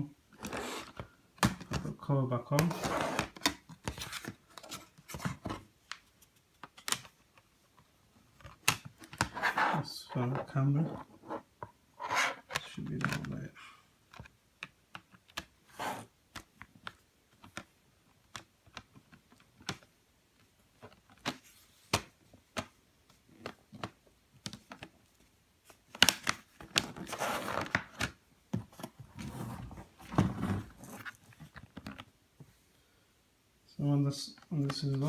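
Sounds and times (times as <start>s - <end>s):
rustling and scraping: 2.7s - 6.7s, 8.4s - 12.7s, 26.6s - 28.0s, 28.6s - 32.6s.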